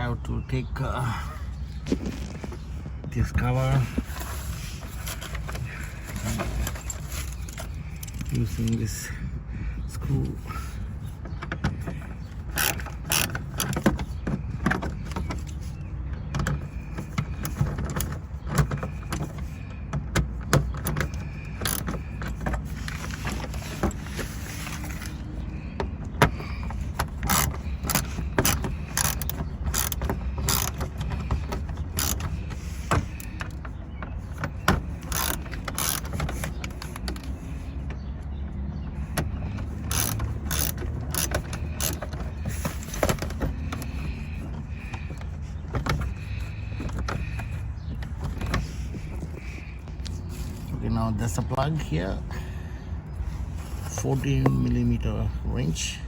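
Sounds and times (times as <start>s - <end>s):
tools clicking and knocking: 11.2s - 38.0s, 39.1s - 50.2s.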